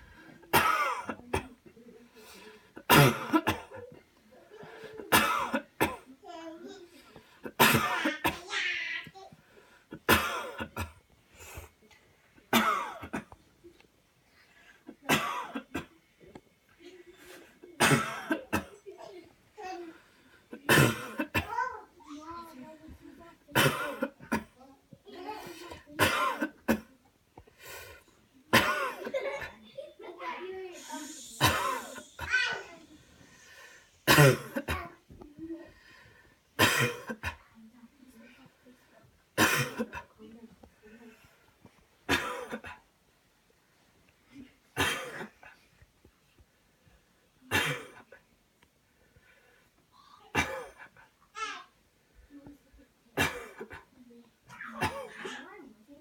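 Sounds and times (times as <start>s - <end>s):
person coughing hard: 0.5s - 1.5s, 2.9s - 3.8s, 5.1s - 6.0s, 7.6s - 8.4s, 10.0s - 11.0s, 12.5s - 13.3s, 15.1s - 15.9s, 17.8s - 18.8s, 20.7s - 21.6s, 23.6s - 24.5s, 26.0s - 26.9s, 28.5s - 29.5s, 30.8s - 32.7s, 34.0s - 34.9s, 36.6s - 37.4s, 39.4s - 40.0s, 42.1s - 42.8s, 44.8s - 45.4s, 47.5s - 48.1s, 50.3s - 50.9s, 53.2s - 53.8s, 54.6s - 55.4s
person coughing: 2.9s - 3.8s, 17.8s - 19.0s, 23.6s - 24.5s, 28.5s - 29.5s, 30.8s - 32.8s, 33.5s - 34.9s, 44.8s - 45.4s, 54.7s - 55.4s
deep breath in: 30.8s - 32.2s.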